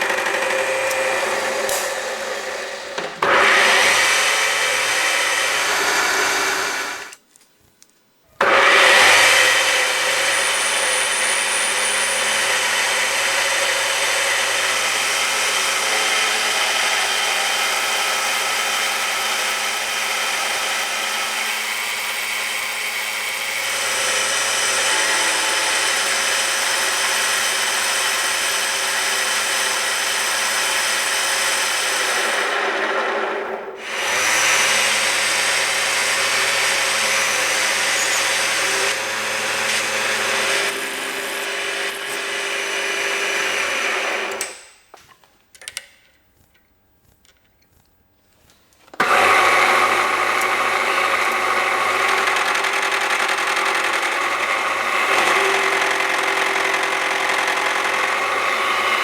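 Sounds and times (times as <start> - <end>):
machine tool motor hum: 0.0 - 7.2, 49.0 - 59.0
metal cutting noise: 0.0 - 7.2, 8.4 - 59.0.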